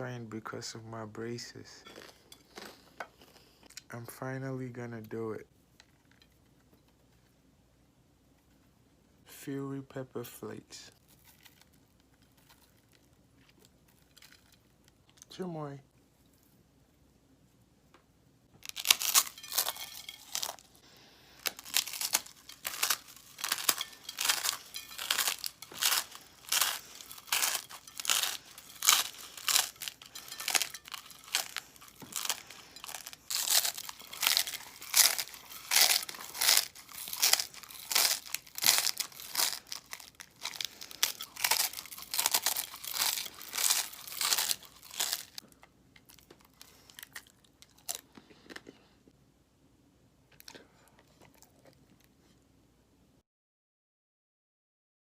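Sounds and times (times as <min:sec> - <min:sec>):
crunchy chewing: 0:18.6 - 0:48.8, 0:50.3 - 0:52.1.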